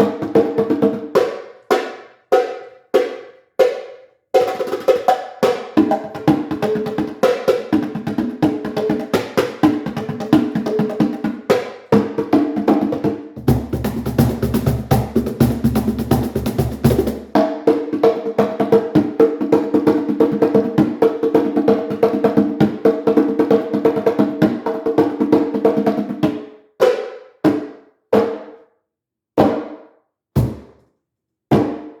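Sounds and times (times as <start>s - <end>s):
drums playing fast: 4.4s - 26.2s.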